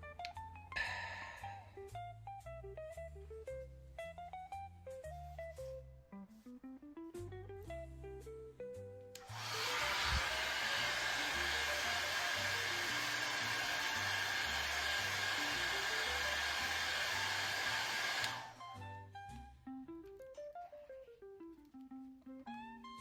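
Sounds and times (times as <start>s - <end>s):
guitar music: 0.0s - 9.4s, 18.4s - 23.0s
hot-air blower whining: 9.2s - 18.8s.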